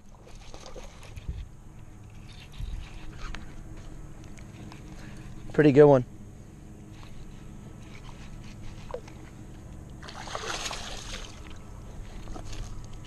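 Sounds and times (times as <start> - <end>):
fish splashing at water surface: 10.0 - 11.7.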